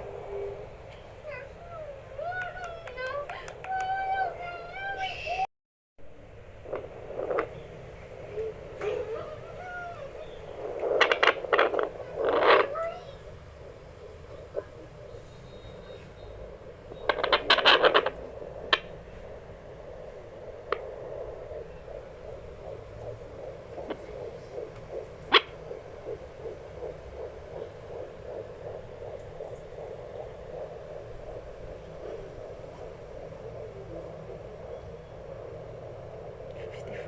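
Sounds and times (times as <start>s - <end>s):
whooshing heartbeat pulses: 0.0s - 5.0s, 6.3s - 37.0s
scratchy crackle: 6.6s - 7.6s, 8.4s - 15.1s, 16.0s - 37.0s
sharp clicks: 10.4s - 12.8s, 16.9s - 19.0s, 19.8s - 33.3s.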